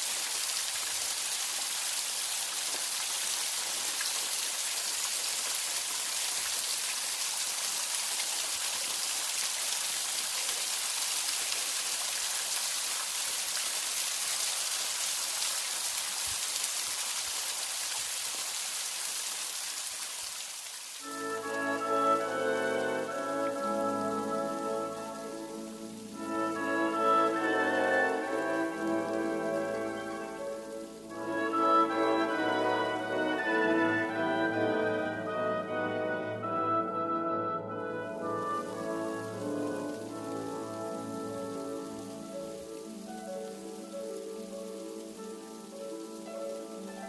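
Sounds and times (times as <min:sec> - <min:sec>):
waterfall rushing: 0:00.0 - 0:47.0
music: 0:21.0 - 0:47.0.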